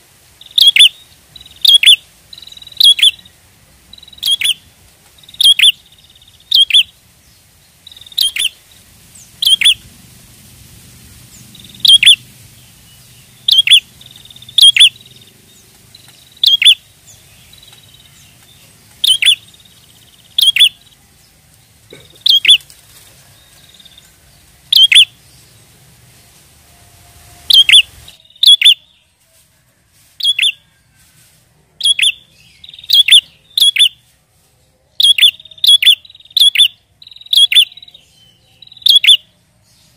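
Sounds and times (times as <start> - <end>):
bird chirping sharply: 0.4 - 3.3, 3.9 - 4.6, 5.2 - 6.9, 7.9 - 8.6, 9.2 - 9.8, 11.3 - 21.0, 22.2 - 22.7, 24.7 - 25.5, 27.5 - 29.0, 30.2 - 30.6, 31.8 - 34.0, 35.0 - 39.3.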